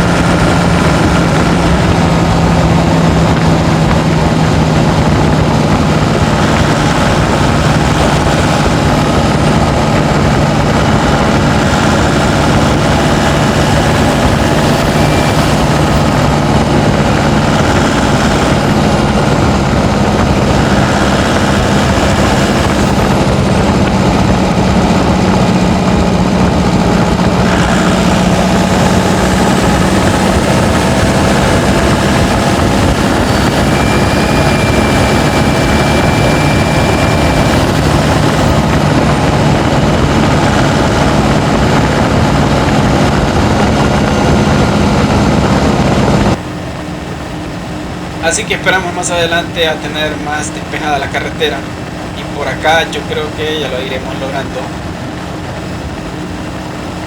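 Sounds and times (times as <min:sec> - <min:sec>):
road noise: 0:00.0 - 0:57.0
truck engine droning: 0:00.0 - 0:57.0.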